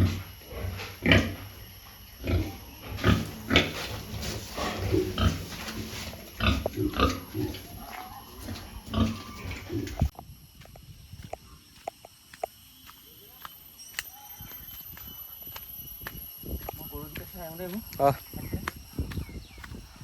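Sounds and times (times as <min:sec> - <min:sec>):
pigs grunting: 0:00.0 - 0:01.6, 0:02.2 - 0:10.1.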